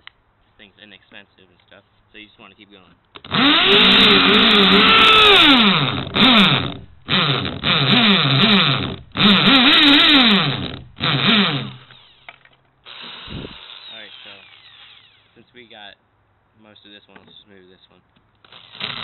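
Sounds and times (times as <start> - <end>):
drill bit grinding into phone: 3.2 - 12.3, 12.9 - 15.4, 18.4 - 19.0
power drill motor: 3.2 - 15.4, 18.4 - 19.0.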